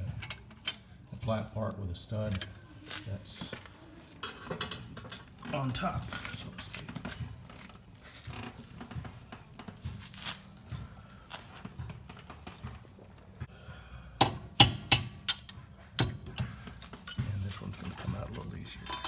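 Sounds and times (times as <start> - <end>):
metal tools clinking: 0.0 - 1.2, 2.3 - 2.6, 4.2 - 7.7, 14.2 - 19.0
sharp metallic clicks: 14.2 - 16.6.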